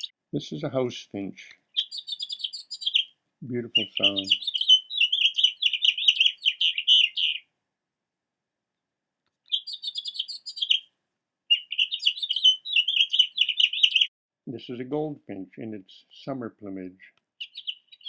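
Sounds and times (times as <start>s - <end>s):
house finch song: 0.0s - 7.5s, 9.5s - 10.9s, 11.5s - 14.1s, 17.4s - 18.0s.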